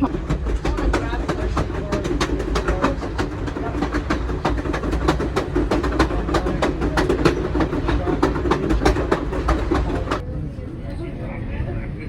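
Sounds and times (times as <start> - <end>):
rattles and clicks: 0.0 - 10.2
train car rumbling on track: 0.0 - 10.8.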